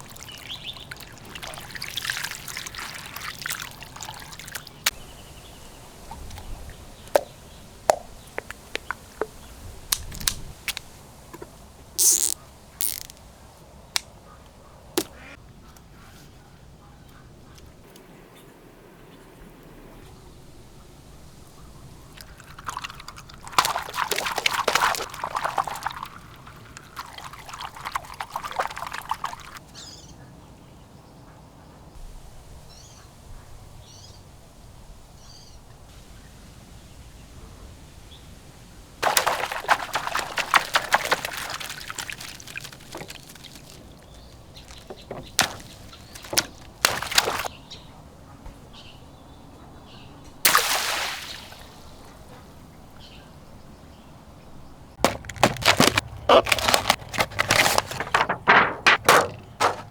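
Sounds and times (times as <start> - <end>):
water pouring and splashing: 0.0 - 13.3, 21.4 - 29.6, 39.0 - 47.5, 50.4 - 52.5, 55.0 - 59.9.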